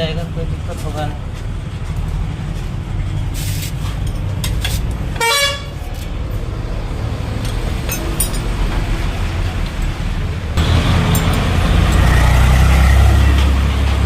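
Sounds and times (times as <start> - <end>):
low rumble of traffic: 0.0 - 14.0
vehicle horn honk: 5.2 - 5.8.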